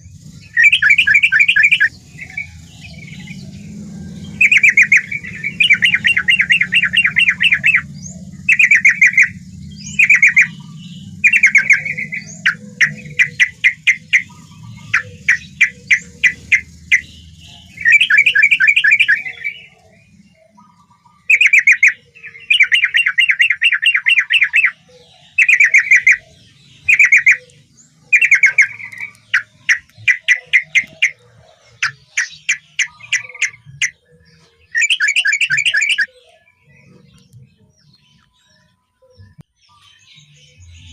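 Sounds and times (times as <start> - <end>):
low hum: 0.0 - 24.0
bird singing rapid notes: 0.0 - 40.9.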